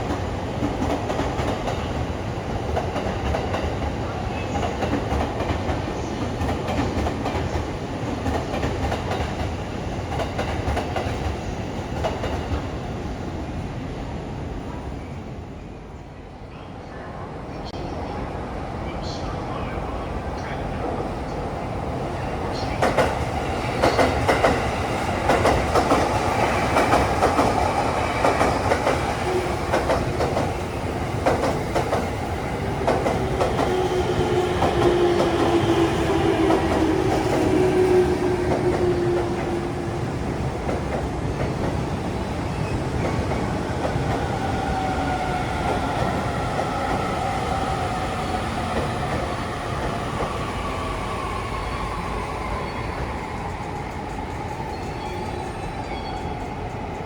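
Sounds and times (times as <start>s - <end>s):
train running on rails: 0.0s - 57.0s
train whine: 17.7s - 57.0s.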